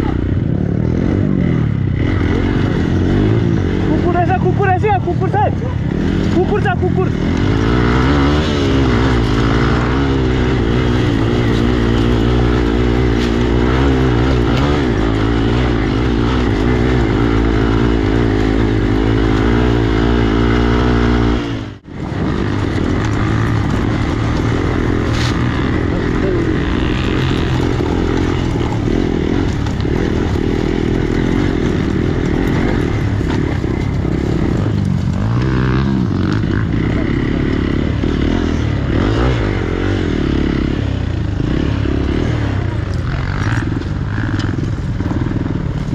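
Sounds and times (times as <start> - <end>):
motorcycle engine revving: 0.0 - 45.9.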